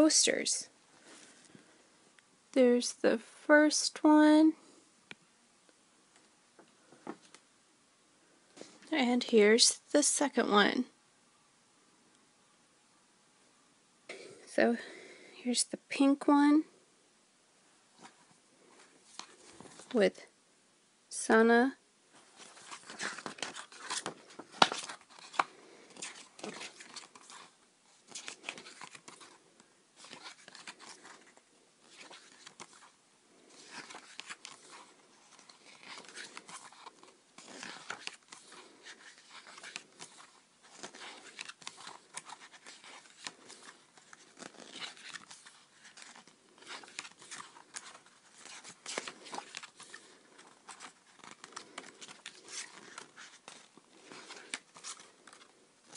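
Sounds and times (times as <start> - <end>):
paper and card rustling: 18.0 - 20.0, 22.1 - 55.9
plastic wrap crinkling and tearing: 22.3 - 29.4, 33.5 - 55.9.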